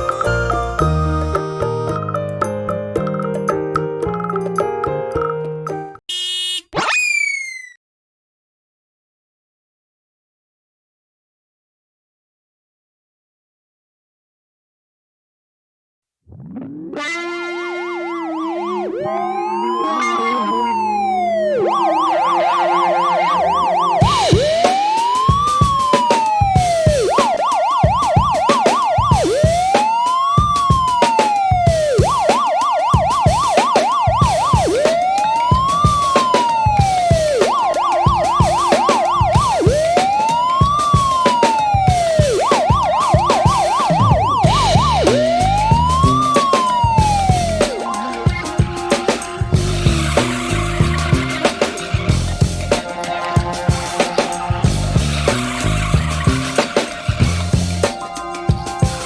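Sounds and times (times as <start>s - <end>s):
police siren wail and yelp: 6.8s - 7.8s, 16.3s - 56.5s
music with steady beat: 17.9s - 59.0s.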